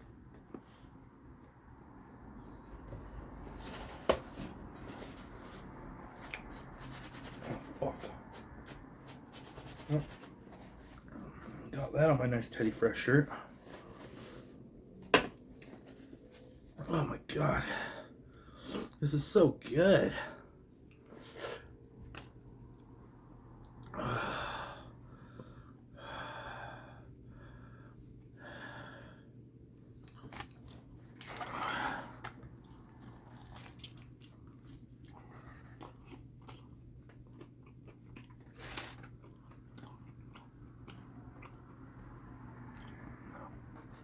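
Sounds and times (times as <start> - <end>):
person chewing food: 1.3 - 11.7, 29.8 - 44.0.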